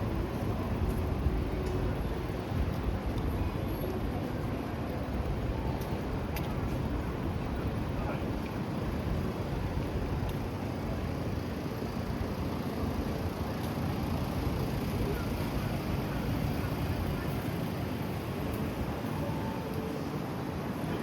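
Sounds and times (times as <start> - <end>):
traffic rumble: 0.0 - 21.0.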